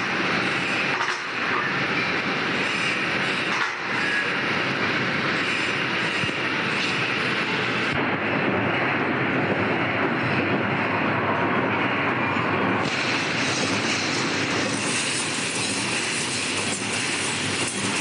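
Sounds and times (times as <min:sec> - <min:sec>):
welding machine clattering: 0:00.0 - 0:07.9, 0:12.8 - 0:18.0.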